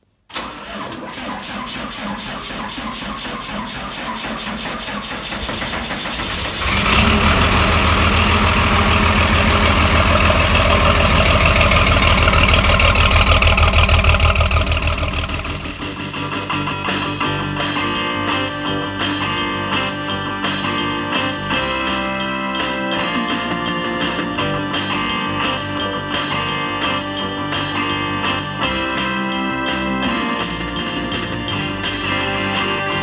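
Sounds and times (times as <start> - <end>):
farm machinery engine running: 0.3 - 16.0.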